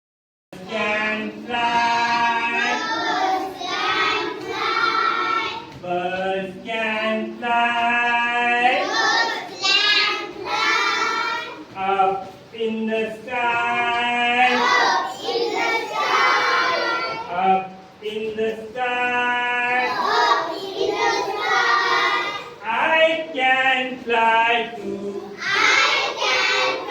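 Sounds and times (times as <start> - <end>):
child singing: 0.6 - 5.8, 8.6 - 11.8, 13.5 - 17.4, 19.7 - 22.7, 24.4 - 26.9.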